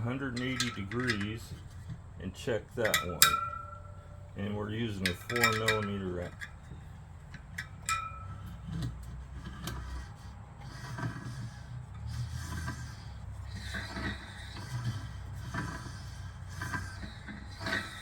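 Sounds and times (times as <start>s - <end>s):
low steady hum: 0.0s - 18.0s
spoke wrench rubbing and clicking: 0.0s - 18.0s.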